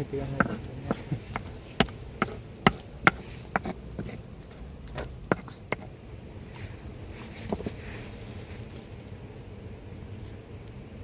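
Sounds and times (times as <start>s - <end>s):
sharp knocks: 0.0s - 5.9s.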